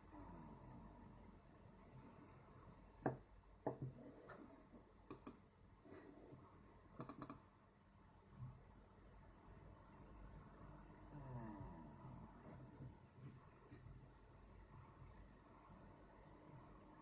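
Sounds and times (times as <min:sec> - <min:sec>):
faint steady background noise: 0:00.0 - 0:17.0
laptop clicks: 0:07.0 - 0:07.4.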